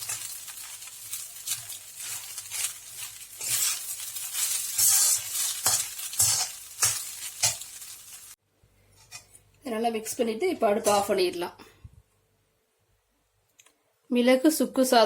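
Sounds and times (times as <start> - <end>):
rice sizzling in a pan: 0.0 - 8.4
spoon scraping a pan: 0.0 - 9.4.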